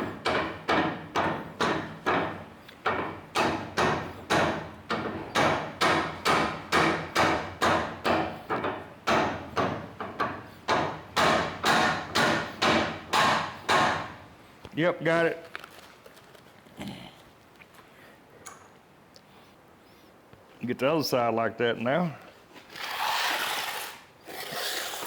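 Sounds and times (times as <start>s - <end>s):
hammer blows on metal: 0.0s - 14.2s.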